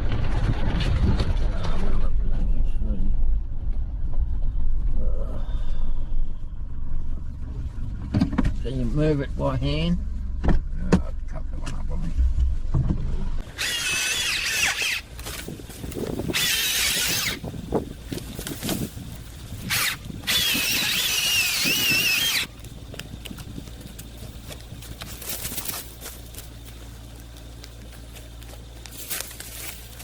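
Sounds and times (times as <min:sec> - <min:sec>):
power saw cutting wood: 0:13.4 - 0:15.4, 0:16.3 - 0:17.4, 0:19.7 - 0:22.5.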